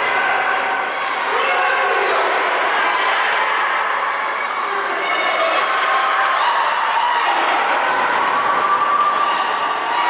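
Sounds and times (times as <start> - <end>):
crowd talking and shouting: 0.0 - 10.0.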